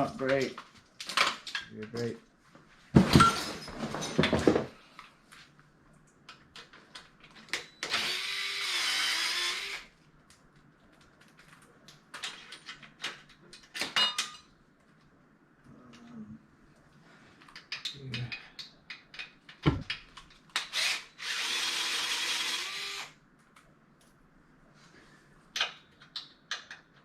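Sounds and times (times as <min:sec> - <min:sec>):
power drill running: 0:07.8 - 0:09.9, 0:20.7 - 0:23.1
tools clicking and knocking: 0:17.4 - 0:20.7, 0:25.6 - 0:27.0.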